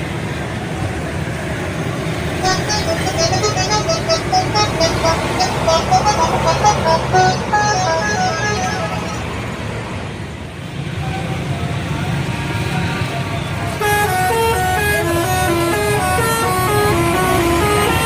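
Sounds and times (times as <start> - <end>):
bus engine rumbling: 0.0 - 18.0
musical bus horn tune: 2.4 - 9.7, 13.7 - 18.0.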